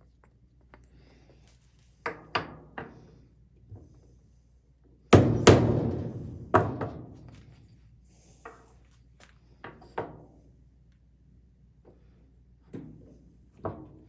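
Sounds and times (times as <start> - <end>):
sharp knocks: 5.2 - 7.2.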